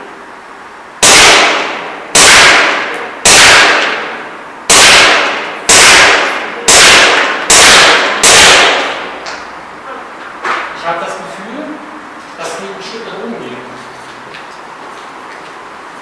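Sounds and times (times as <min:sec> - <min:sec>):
airsoft pistol shots: 0:01.0 - 0:09.2.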